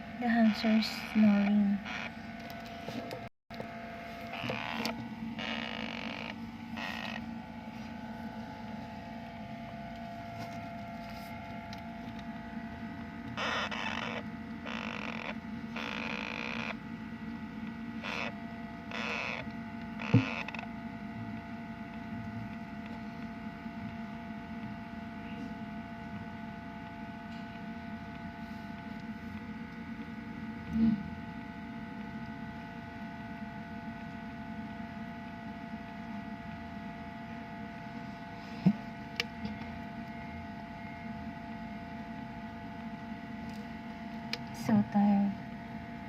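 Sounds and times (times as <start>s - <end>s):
steady background hum: 0.0s - 46.0s
hamster snoring: 4.4s - 7.2s, 13.4s - 16.8s.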